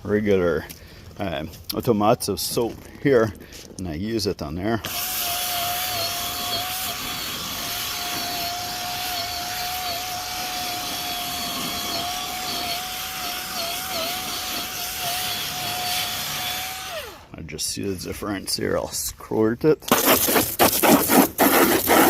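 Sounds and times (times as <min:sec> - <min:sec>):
power scrubber motor whine: 0:04.9 - 0:17.3.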